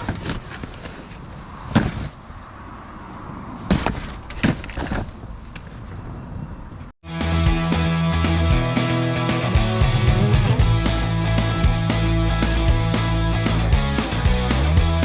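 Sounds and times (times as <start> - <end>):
plastic pipe scraping and rustling: 0.0 - 2.2
steady outdoor noise: 0.0 - 15.0.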